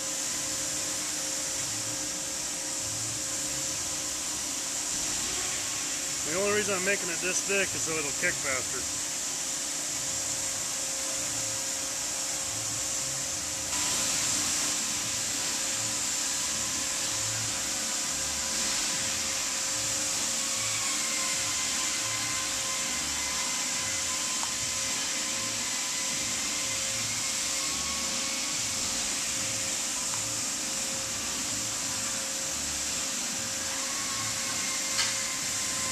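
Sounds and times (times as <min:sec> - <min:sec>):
small electric motor whirring: 0:15.0 - 0:35.9.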